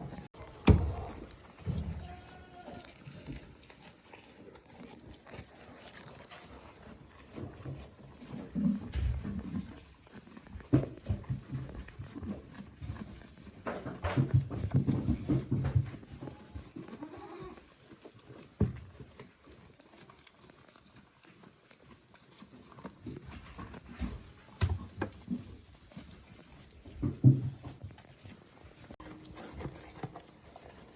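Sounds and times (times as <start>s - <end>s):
goats bleating: 1.7s - 3.0s.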